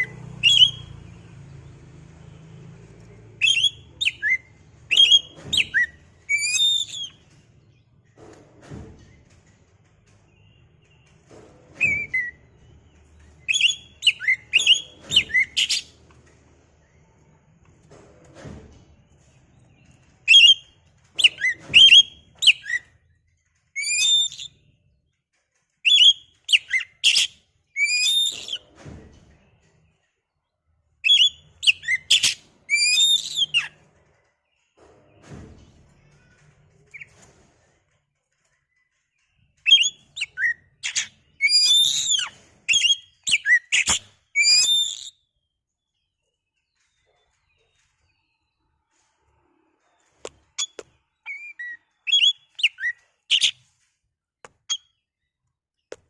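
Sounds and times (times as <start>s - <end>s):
bird singing whistles and chirps: 0.4s - 0.9s, 3.4s - 7.2s, 13.4s - 15.9s, 20.3s - 22.9s, 23.8s - 24.6s, 25.8s - 28.6s, 31.0s - 33.7s, 39.6s - 45.3s, 50.6s - 53.6s.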